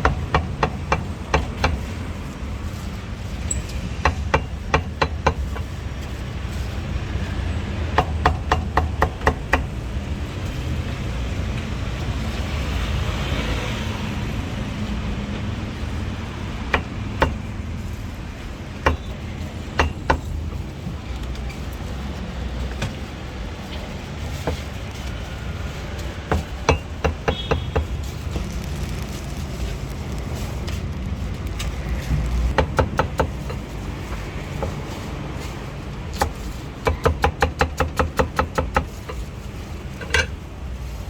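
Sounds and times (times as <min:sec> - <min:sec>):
low street traffic rumble: 0:00.0 - 0:41.0
cleaver chopping on wooden board: 0:26.3 - 0:28.6, 0:36.2 - 0:39.0.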